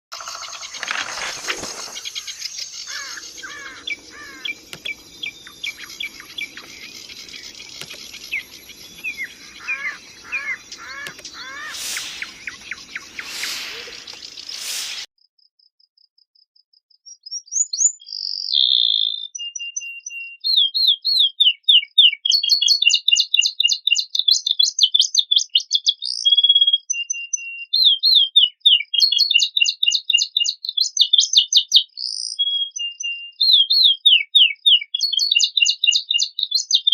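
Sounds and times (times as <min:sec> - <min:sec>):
canary singing trills: 0:00.2 - 0:15.1
downward-sliding bird chirps: 0:00.2 - 0:15.1.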